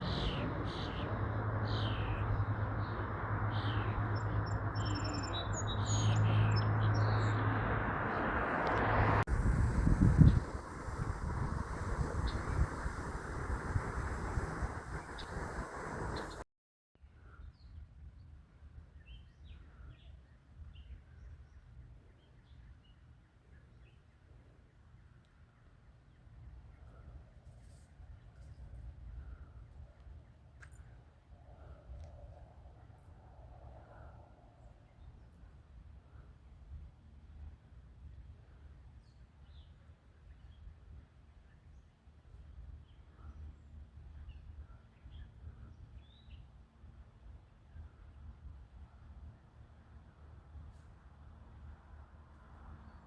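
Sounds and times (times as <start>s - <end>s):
birds chirping: 0.0s - 8.6s, 9.7s - 16.4s
low background rumble: 0.0s - 16.4s
faint birds chirping: 9.9s - 16.4s.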